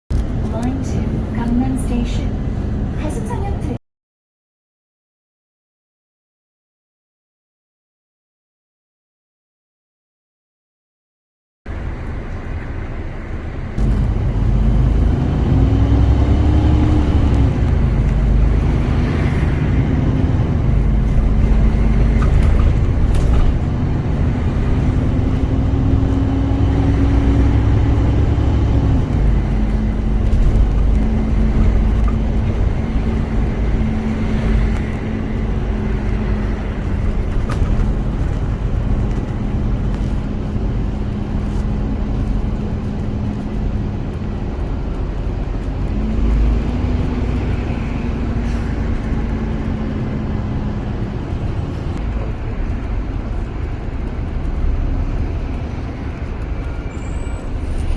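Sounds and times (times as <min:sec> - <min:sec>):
bus engine and road rumble: 0:00.1 - 0:03.8, 0:11.7 - 0:57.9.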